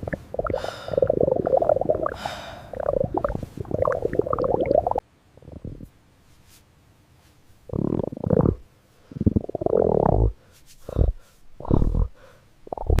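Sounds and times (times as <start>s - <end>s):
stomach growling: 0.0s - 5.9s, 7.7s - 8.6s, 9.2s - 10.4s, 11.6s - 13.0s.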